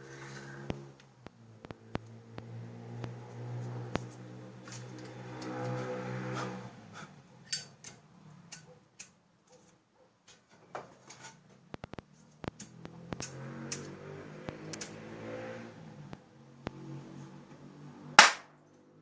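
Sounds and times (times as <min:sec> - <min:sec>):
sharp clicks and taps: 0:11.7 - 0:15.0.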